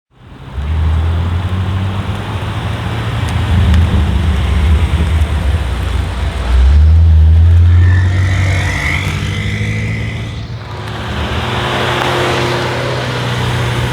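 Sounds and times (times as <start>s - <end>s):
car engine deep exhaust note: 0.6s - 13.9s
faint rising turbo whistle: 3.2s - 12.7s.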